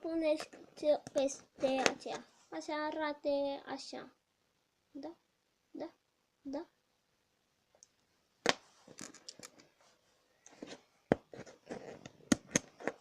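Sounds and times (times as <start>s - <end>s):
scratchy rustling: 8.6s - 13.0s.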